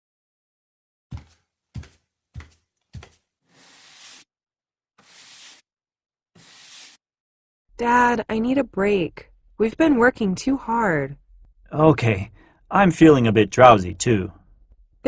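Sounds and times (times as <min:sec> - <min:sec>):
scraping strokes: 0:01.1 - 0:04.3, 0:05.0 - 0:05.6, 0:06.4 - 0:07.0.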